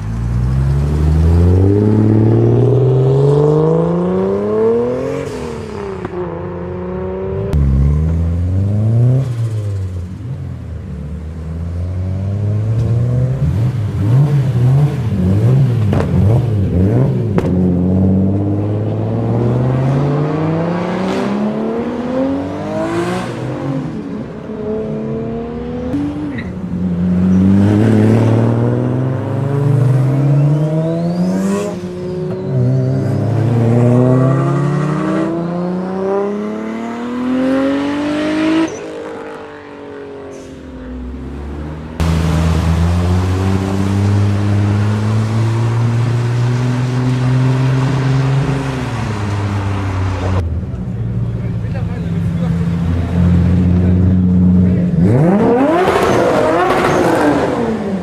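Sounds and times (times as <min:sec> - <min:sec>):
car engine accelerating hard: 0:27.0 - 0:58.0.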